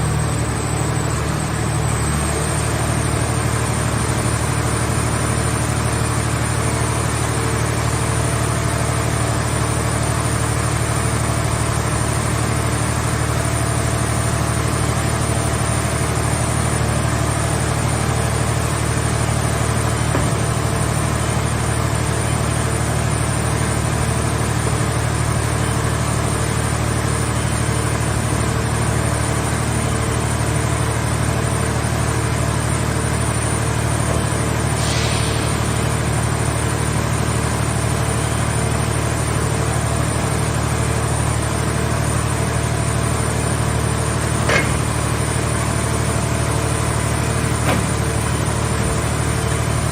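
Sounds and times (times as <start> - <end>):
power unit humming: 40.7 - 49.9.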